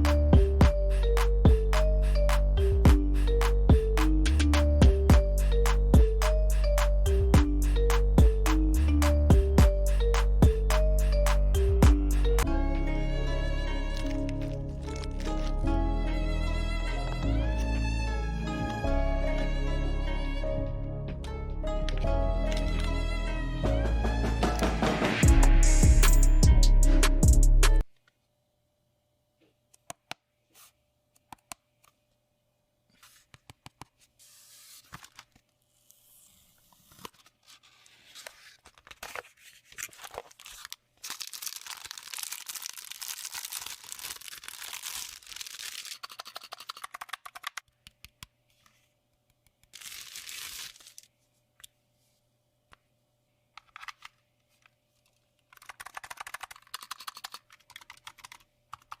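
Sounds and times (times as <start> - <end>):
packaging tearing and crinkling: 36.6 - 47.6, 49.6 - 51.1.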